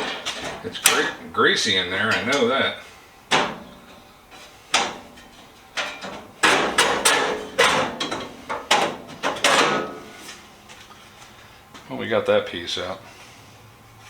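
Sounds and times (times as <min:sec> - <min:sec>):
metal clanks and knocks: 0:00.0 - 0:01.2, 0:03.3 - 0:10.8.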